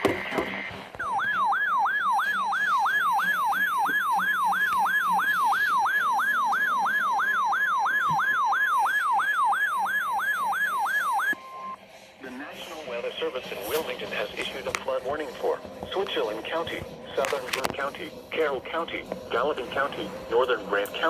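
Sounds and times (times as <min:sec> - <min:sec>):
fast repeating siren sweep: 0:01.0 - 0:11.8
steady warning tone: 0:01.0 - 0:11.8.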